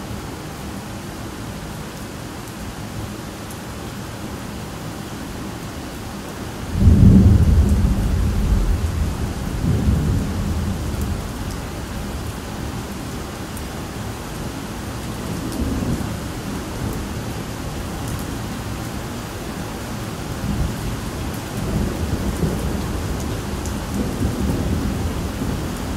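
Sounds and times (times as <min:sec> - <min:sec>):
steady rain falling: 0:00.0 - 0:25.9
rolling thunder: 0:06.7 - 0:12.2.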